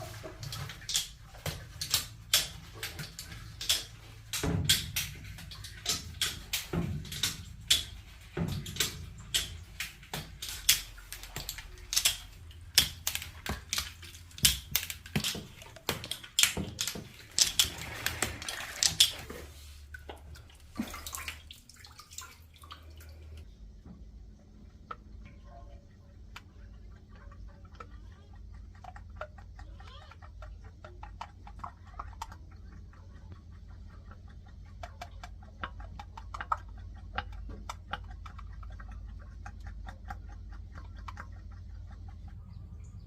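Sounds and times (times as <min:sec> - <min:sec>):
clattering clicks and knocks: 0:00.0 - 0:19.4
splashing water: 0:00.0 - 0:23.5, 0:24.8 - 0:43.0
low steady hum: 0:00.0 - 0:43.0.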